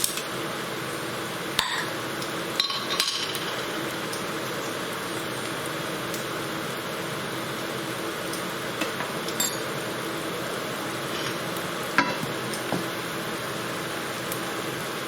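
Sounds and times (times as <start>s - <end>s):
onions frying in oil: 0.0s - 15.0s
utensil clinking on a pan: 2.6s - 3.8s, 8.8s - 9.8s.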